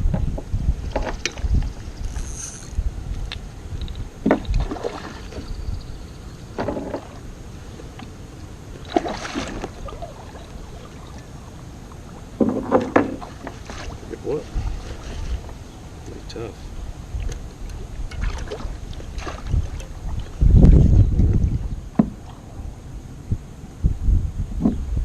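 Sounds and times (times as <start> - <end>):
knocks against boat: 4.2 - 5.5, 6.6 - 7.2, 12.4 - 13.9, 22.0 - 22.3
water splashes: 4.2 - 5.6, 8.7 - 21.5.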